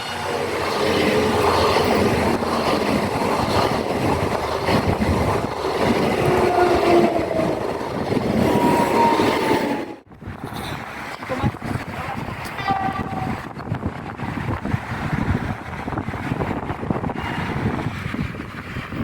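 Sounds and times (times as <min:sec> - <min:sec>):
train rumbling on rails: 0:00.0 - 0:19.0
train wheel squeal: 0:08.4 - 0:09.9.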